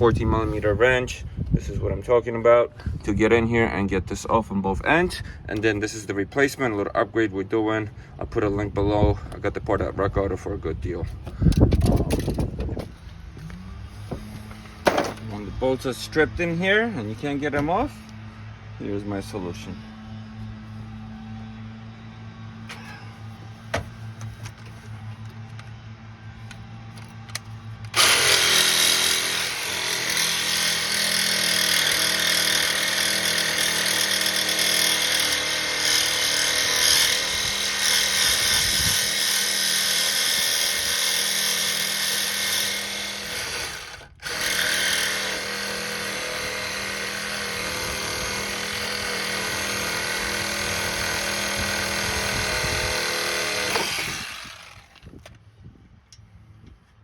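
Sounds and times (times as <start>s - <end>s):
power tool running under load: 13.4s - 55.4s.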